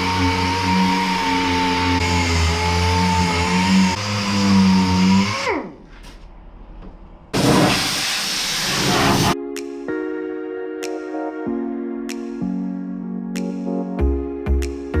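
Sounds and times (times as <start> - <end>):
power tool whining: 0.0 - 5.9
loud hiss: 7.4 - 9.4.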